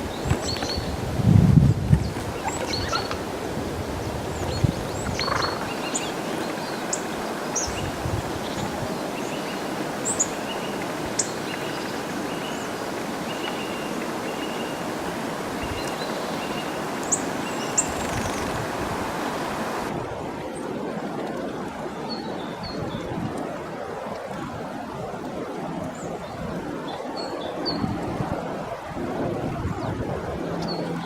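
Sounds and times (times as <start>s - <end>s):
steady rushing background noise: 10.8s - 21.8s
small birds chipping: 15.6s - 18.8s.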